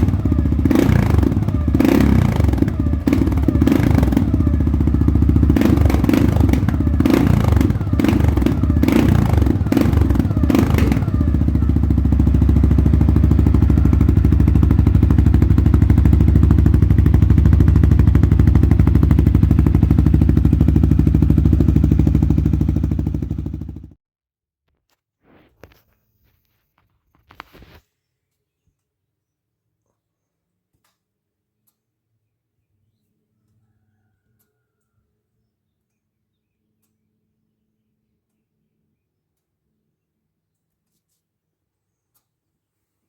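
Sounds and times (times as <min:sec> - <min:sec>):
atv engine revving and idling: 0:00.0 - 0:24.0.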